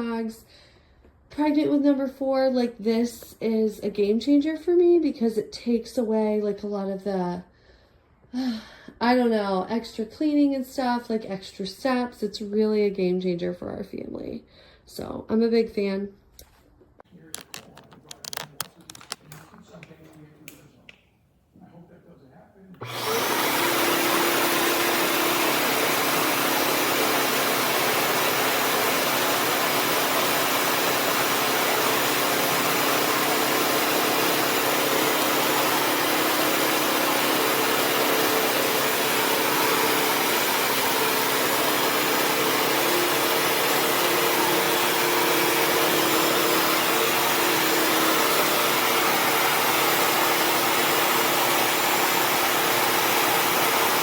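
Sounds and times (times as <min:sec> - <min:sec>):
floor cleaner suction noise: 0:22.8 - 0:54.0.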